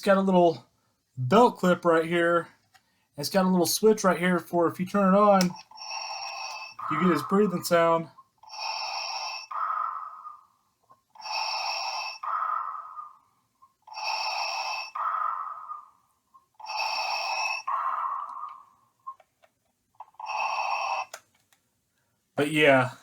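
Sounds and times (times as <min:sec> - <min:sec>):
toy recorded breathing: 0:05.4 - 0:21.4.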